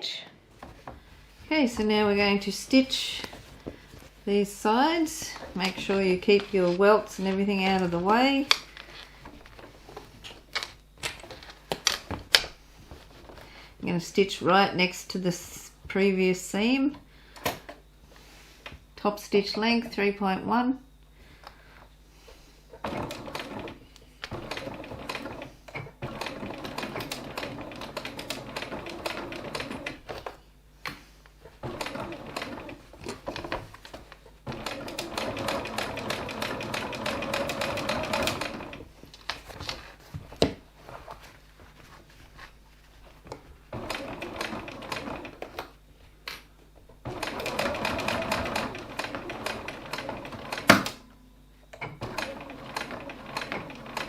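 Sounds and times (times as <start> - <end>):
sewing machine stitching: 22.7 - 30.3, 31.4 - 33.6, 34.4 - 38.9, 43.7 - 45.7, 47.0 - 51.0, 51.8 - 54.0.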